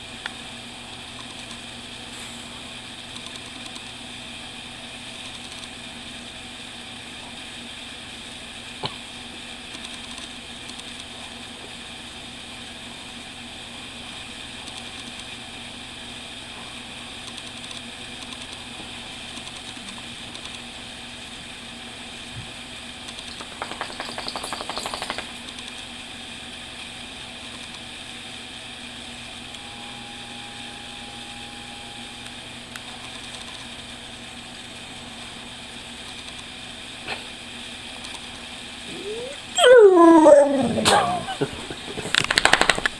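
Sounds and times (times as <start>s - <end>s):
machine hum: 0.0s - 27.0s, 27.9s - 42.9s
rapid rattling buzz: 23.0s - 25.6s
dog whining: 38.8s - 41.5s.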